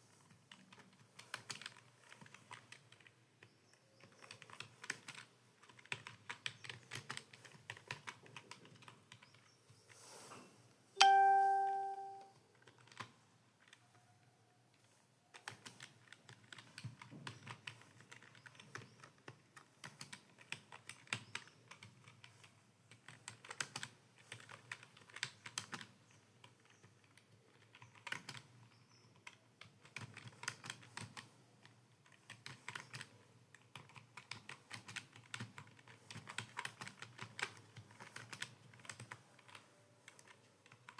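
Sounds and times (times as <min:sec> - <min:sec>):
fast typing on keyboard: 0:00.5 - 0:09.6, 0:11.0 - 0:13.8, 0:15.3 - 0:40.9
loud chime: 0:11.0 - 0:12.2.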